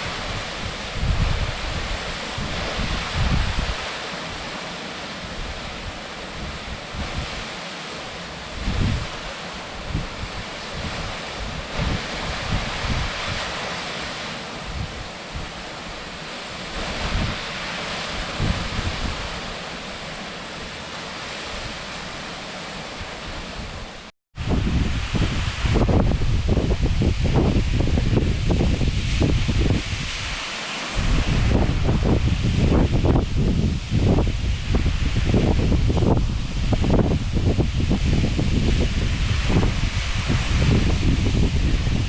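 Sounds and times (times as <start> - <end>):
wind buffeting microphone: 0.0 - 4.0, 8.4 - 13.6, 16.7 - 17.5, 18.1 - 19.6, 24.4 - 30.4, 31.0 - 42.0
waterfall rushing: 0.0 - 24.1, 28.6 - 42.0.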